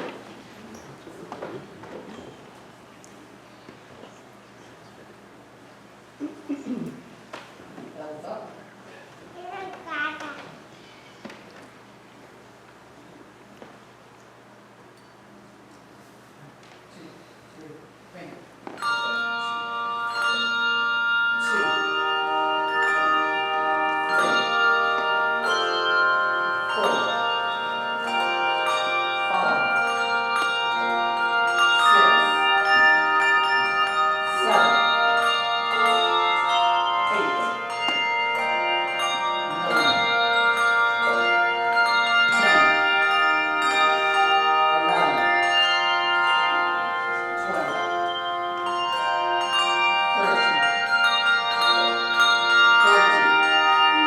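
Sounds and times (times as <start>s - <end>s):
handbell choir playing chords: 18.7s - 54.0s.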